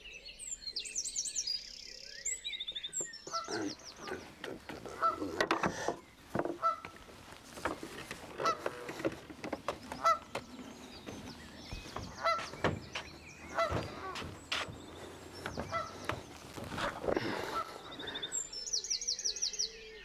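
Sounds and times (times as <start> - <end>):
small birds chirping: 0.0 - 20.0
geese honking: 3.3 - 5.8, 6.5 - 18.3.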